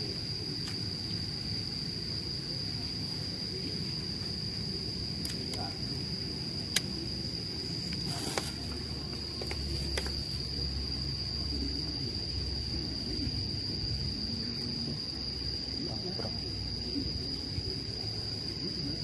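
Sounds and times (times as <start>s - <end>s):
insects trilling: 0.0s - 19.0s.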